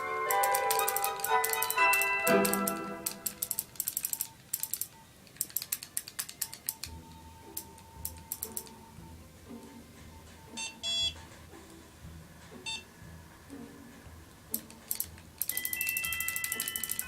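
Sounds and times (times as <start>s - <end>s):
fast ticking marimba-like melody: 0.0s - 4.2s, 14.6s - 17.0s
soft repeating background music: 0.0s - 17.0s
short electronic beeps: 10.0s - 11.2s, 12.7s - 12.9s, 15.5s - 17.0s.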